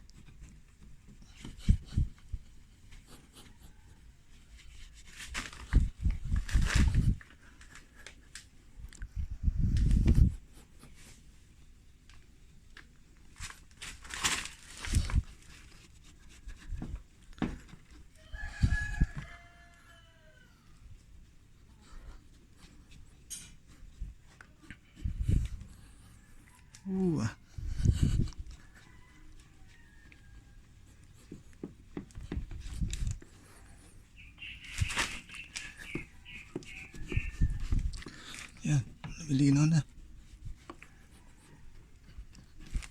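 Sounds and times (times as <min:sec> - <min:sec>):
handling knocks and rubbing: 0:09.6 - 0:18.2, 0:27.6 - 0:42.9
rooster crowing: 0:18.2 - 0:20.8, 0:28.6 - 0:30.8
knocks and scraping: 0:31.0 - 0:41.3.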